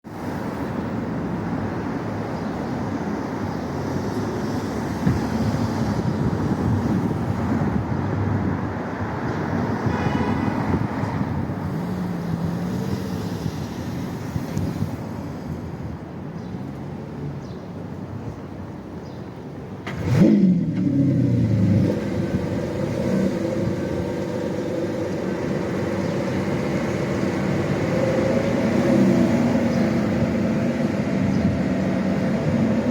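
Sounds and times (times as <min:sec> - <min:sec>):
car engines running: 0:19.8 - 0:32.9.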